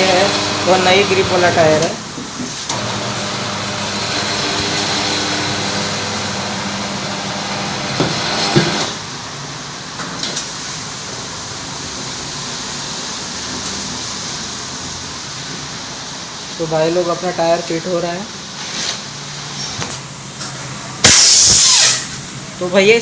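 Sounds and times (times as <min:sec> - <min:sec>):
tyre-changing machine motor whine: 0:00.0 - 0:01.9, 0:02.7 - 0:09.0
steady hum and hiss: 0:00.0 - 0:02.8, 0:03.4 - 0:23.0.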